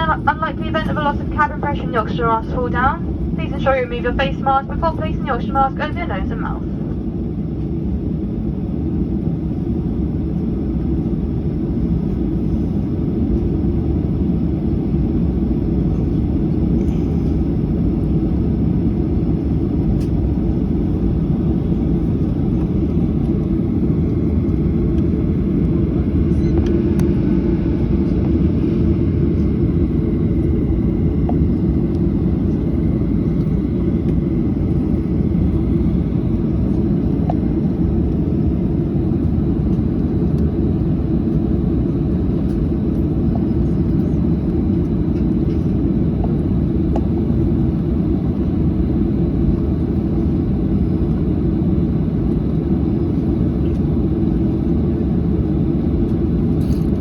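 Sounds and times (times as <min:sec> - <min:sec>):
airliner cabin engine rumble: 0:00.0 - 0:57.0.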